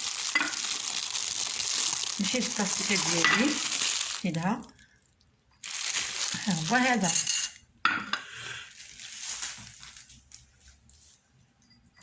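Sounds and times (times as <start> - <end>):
plastic cling film crinkling: 0.0 - 4.9, 5.6 - 7.3, 8.6 - 10.8.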